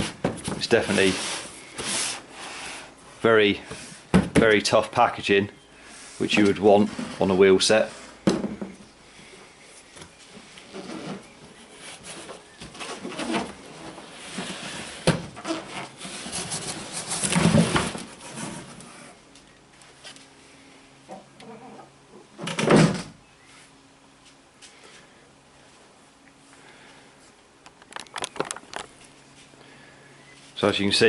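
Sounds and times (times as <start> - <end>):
cardboard box creaking and scraping: 10.6 - 19.2.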